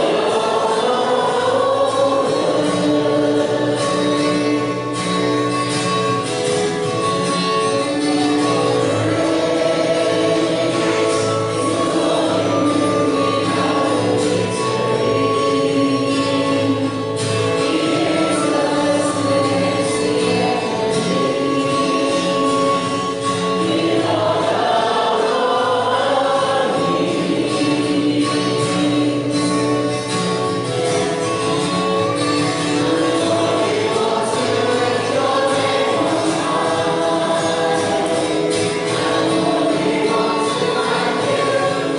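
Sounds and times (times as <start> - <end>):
choir singing: 0.0 - 41.9.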